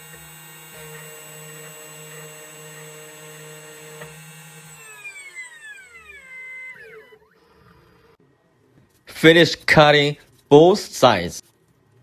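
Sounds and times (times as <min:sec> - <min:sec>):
machine motor whining: 0:00.0 - 0:08.2.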